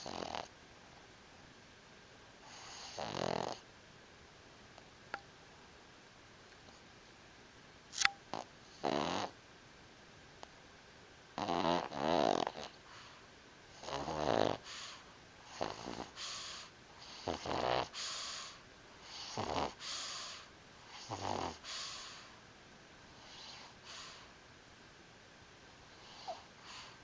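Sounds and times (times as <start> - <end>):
dog snoring: 0.0 - 0.5, 2.4 - 3.7, 8.3 - 9.4, 11.4 - 22.4, 23.2 - 24.3, 25.9 - 27.0.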